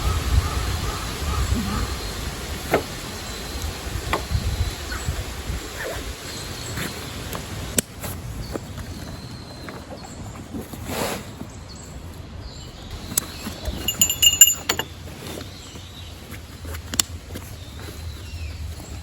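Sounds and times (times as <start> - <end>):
camping gear being packed: 5.7 - 12.3, 12.9 - 19.0
sharp ringing clinks: 13.7 - 15.0.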